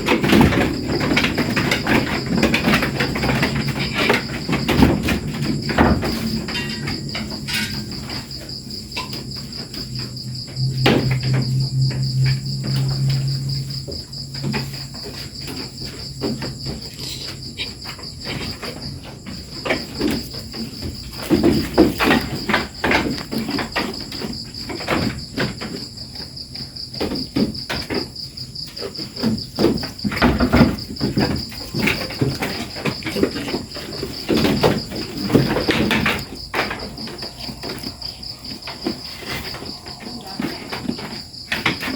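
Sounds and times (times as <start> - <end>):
insects trilling: 0.0 - 41.9
knocks and clattering: 0.0 - 41.9
low hum: 9.5 - 14.3.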